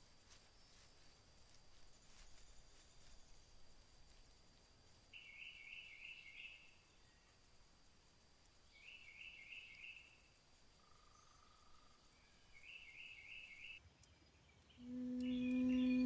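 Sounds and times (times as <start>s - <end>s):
faint woodland ambience: 0.0s - 16.0s
small animal trilled calls: 14.8s - 16.0s.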